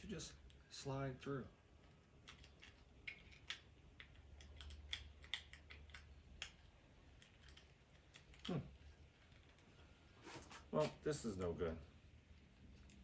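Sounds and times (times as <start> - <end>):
light clicks and taps of small parts: 2.2 - 9.8.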